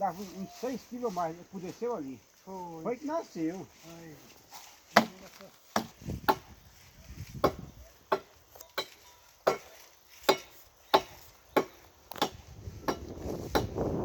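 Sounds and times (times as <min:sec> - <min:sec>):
blade chopping branches: 0:04.5 - 0:06.5, 0:07.3 - 0:14.0.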